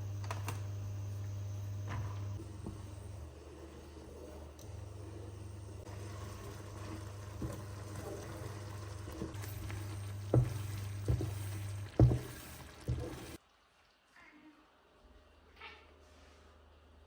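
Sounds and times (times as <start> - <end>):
steady low hum: 0.0 - 13.4.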